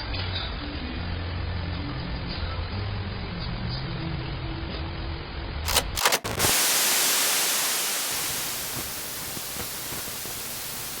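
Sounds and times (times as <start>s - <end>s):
sharp clicks: 5.7s - 6.6s
static hiss: 6.0s - 11.0s.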